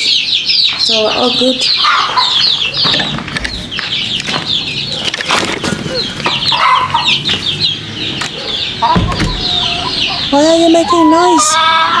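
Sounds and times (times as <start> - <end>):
chickens calling: 0.0 - 12.0
low chicken clucks: 1.8 - 10.3
brief thumps: 8.9 - 11.2.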